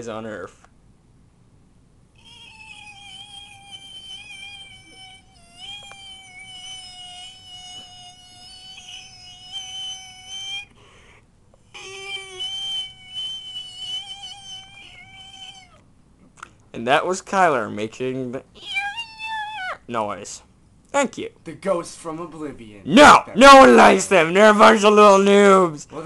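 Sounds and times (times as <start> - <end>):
person making high whining noise: 2.2 - 15.8, 18.6 - 19.8, 23.4 - 24.0.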